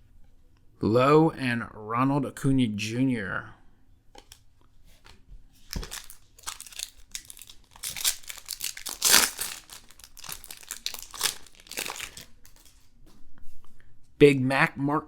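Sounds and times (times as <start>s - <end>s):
card pack wrapper crinkling and tearing: 5.6s - 12.9s.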